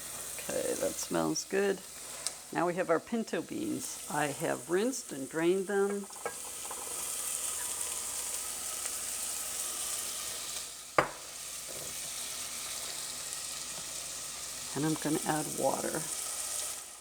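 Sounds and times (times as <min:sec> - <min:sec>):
onions sizzling in oil: 0:00.0 - 0:17.0
sharp knock: 0:11.0 - 0:11.2.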